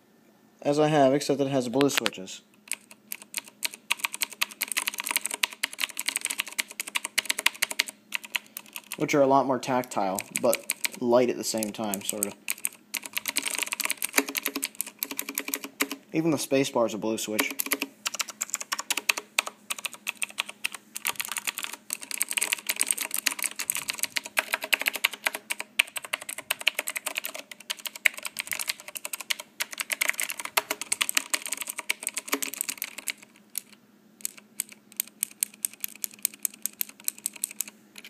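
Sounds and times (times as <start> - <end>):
mechanical keyboard typing: 1.9 - 16.0, 17.4 - 38.0.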